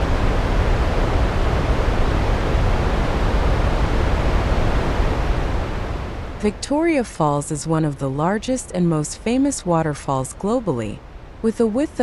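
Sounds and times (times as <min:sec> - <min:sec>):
waterfall rushing: 0:00.0 - 0:06.6.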